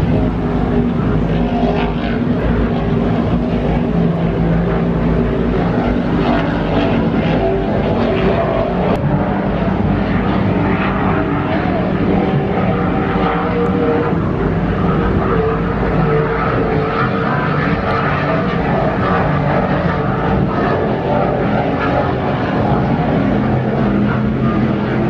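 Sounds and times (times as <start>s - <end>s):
powerboat engines droning: 0.0s - 25.0s.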